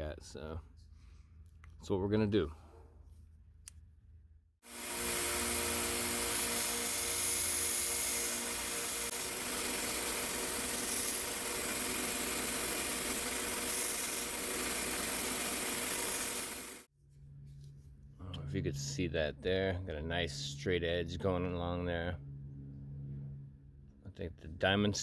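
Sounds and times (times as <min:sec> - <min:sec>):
belt grinder grinding steel: 0:04.6 - 0:16.9.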